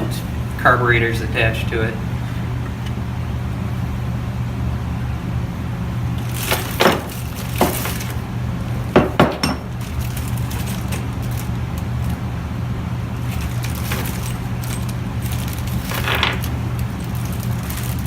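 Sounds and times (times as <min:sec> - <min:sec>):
steady low hum: 0:00.0 - 0:18.0
metal parts clinking: 0:13.2 - 0:18.0.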